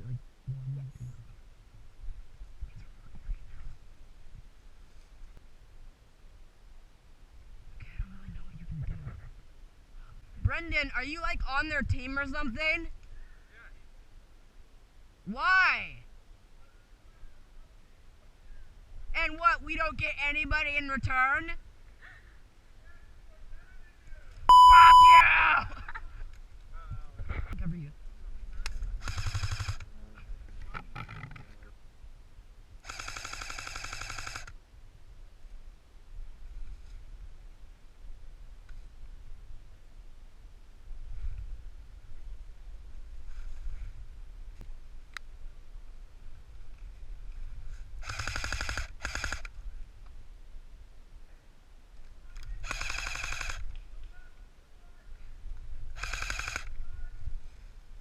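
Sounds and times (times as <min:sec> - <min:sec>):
airsoft rifle firing bursts: 0:29.0 - 0:29.8, 0:32.8 - 0:34.5, 0:48.0 - 0:49.5, 0:52.6 - 0:53.6, 0:56.0 - 0:56.7.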